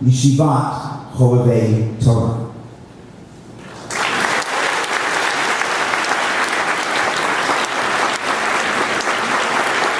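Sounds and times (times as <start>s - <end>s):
audience applauding: 3.6s - 9.9s.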